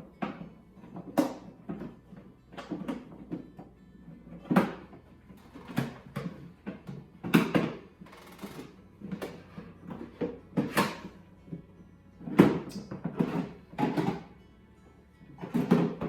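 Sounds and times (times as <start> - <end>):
plastic pail knocks and scrapes: 12.3 - 14.3, 15.4 - 16.0.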